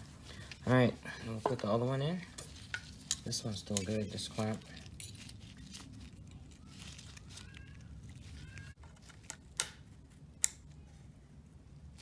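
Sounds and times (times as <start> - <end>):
rubber hose squeaking: 2.5 - 8.8.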